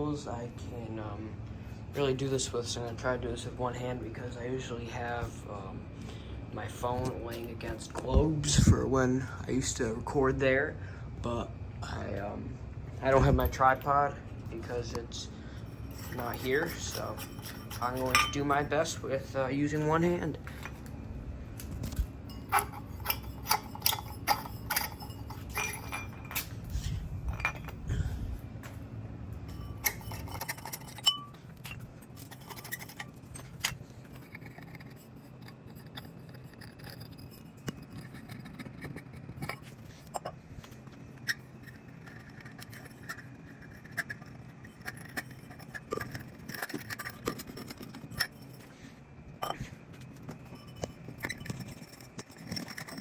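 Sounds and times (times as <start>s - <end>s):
low hum: 2.8s - 53.0s
metal clinks and scrapes: 13.0s - 20.9s, 21.6s - 28.8s, 29.4s - 53.0s.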